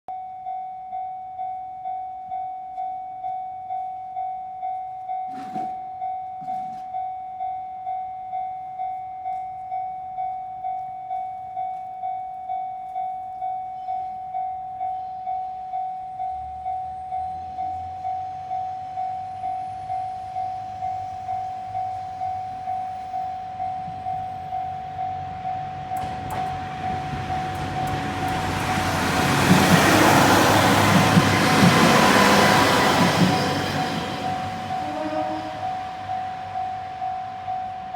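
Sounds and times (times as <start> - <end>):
level crossing warning bell: 0.1 - 37.9
train rumbling past: 16.4 - 37.9.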